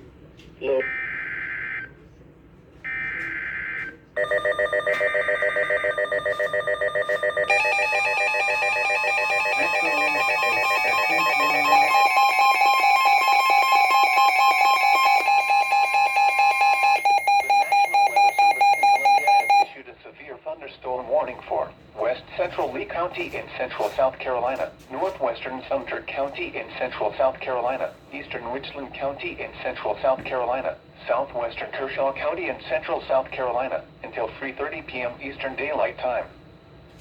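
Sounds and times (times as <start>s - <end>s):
pulsing electronic alert tone: 4.2s - 19.7s
buzzing data bursts: 7.5s - 19.6s.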